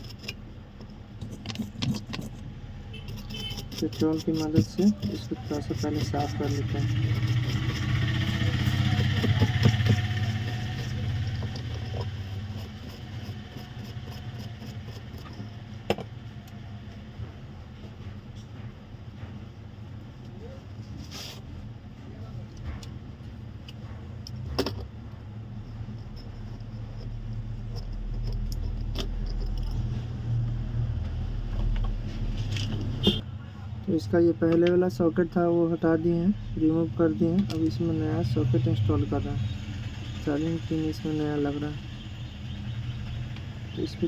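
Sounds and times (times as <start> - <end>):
low engine hum: 4.6 - 19.2.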